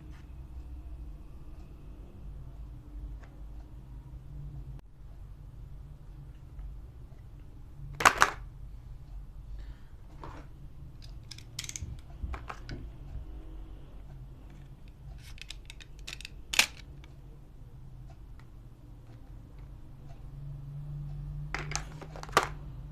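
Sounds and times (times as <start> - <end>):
sharp plastic clicks: 11.0 - 12.8, 14.6 - 17.2.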